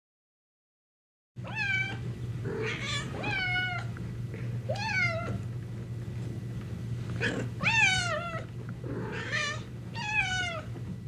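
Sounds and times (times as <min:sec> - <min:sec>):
cat meowing: 0:01.4 - 0:02.0, 0:09.1 - 0:10.7.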